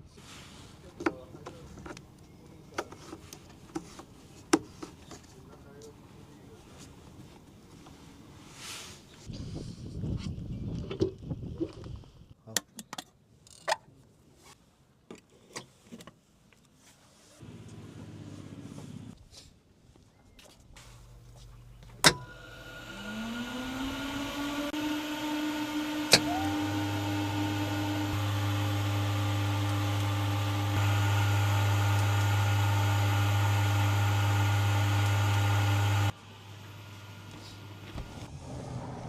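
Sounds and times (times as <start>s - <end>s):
strong steady hum: 21.7s - 38.3s
electric whine rising in pitch: 22.2s - 39.0s.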